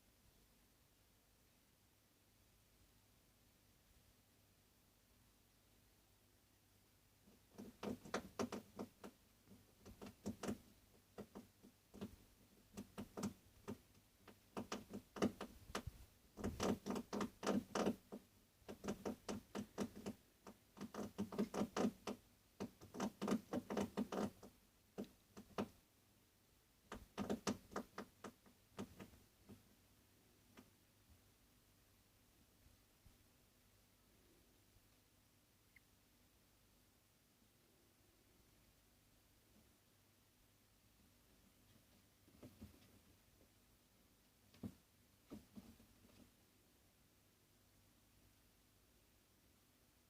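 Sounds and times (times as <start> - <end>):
rapid sharp clicks: 7.5 - 25.8, 26.9 - 29.6.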